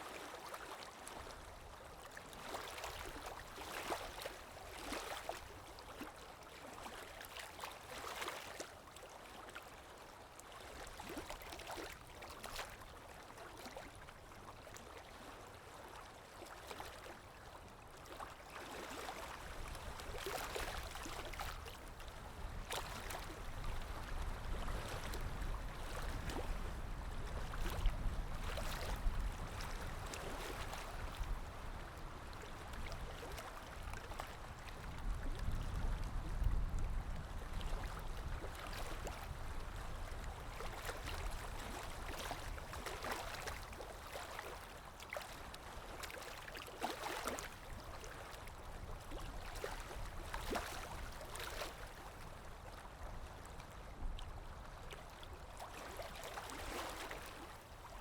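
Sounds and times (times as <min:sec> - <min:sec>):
waves lapping: 0:02.1 - 0:09.5, 0:18.1 - 0:35.1, 0:37.8 - 0:53.1, 0:55.1 - 0:58.0.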